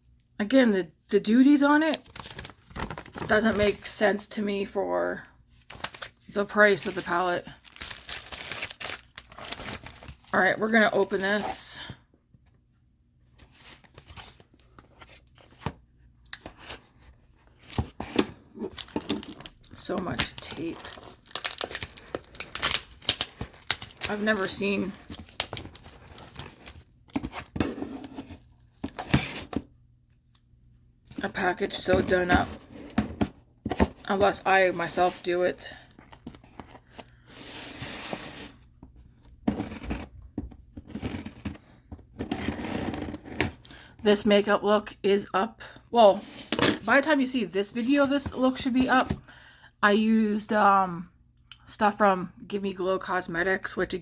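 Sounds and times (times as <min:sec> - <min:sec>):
packing tape tearing: 0:07.6 - 0:10.2, 0:18.8 - 0:24.1.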